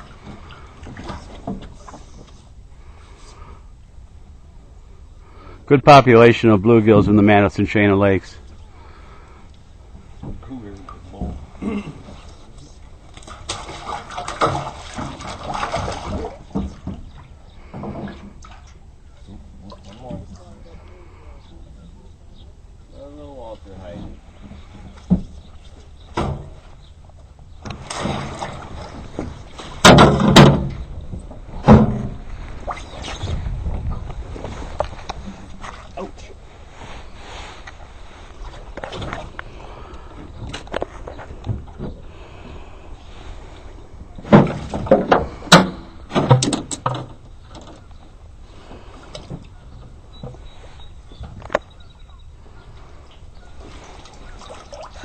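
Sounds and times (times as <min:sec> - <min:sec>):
fish and gear thumping in boat: 0:00.0 - 0:02.4, 0:10.0 - 0:20.6, 0:23.8 - 0:27.0, 0:27.6 - 0:36.3, 0:38.4 - 0:42.9, 0:43.6 - 0:52.6
knocks and thumps: 0:26.1 - 0:26.7, 0:27.6 - 0:32.3, 0:44.2 - 0:47.8.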